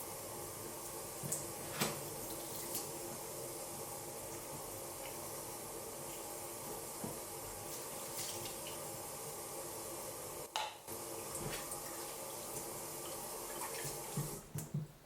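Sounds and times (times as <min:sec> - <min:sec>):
tap running into a sink: 0:06.7 - 0:08.8, 0:10.5 - 0:12.8, 0:13.6 - 0:14.9.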